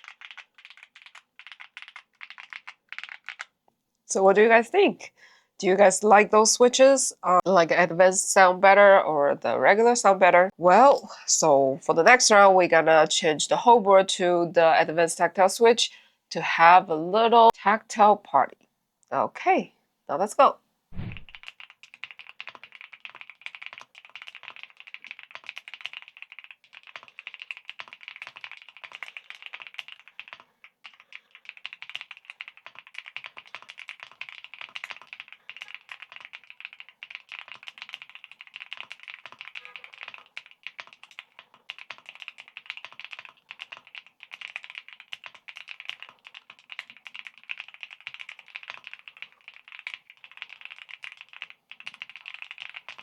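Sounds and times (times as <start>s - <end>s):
mechanical keyboard typing: 0.0s - 3.5s, 21.0s - 53.0s.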